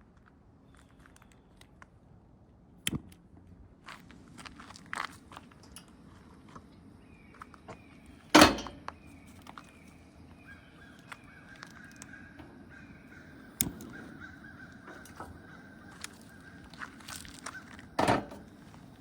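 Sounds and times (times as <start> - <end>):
birds calling: 6.5 - 19.0.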